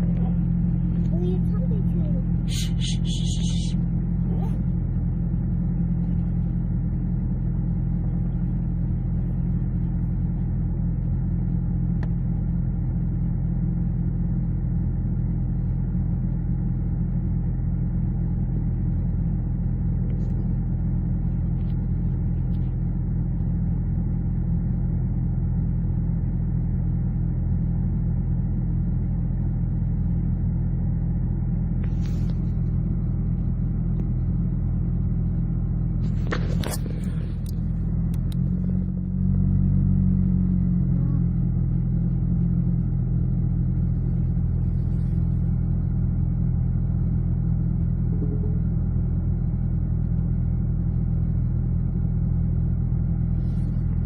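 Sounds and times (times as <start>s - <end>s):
low droning rumble: 0.0s - 54.0s.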